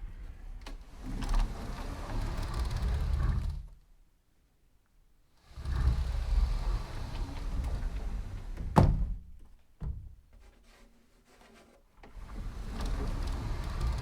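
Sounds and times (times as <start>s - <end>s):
sliding door rolling on track: 0.2s - 3.7s, 5.5s - 8.9s, 12.1s - 14.0s
door stopping with thunk: 7.0s - 10.1s.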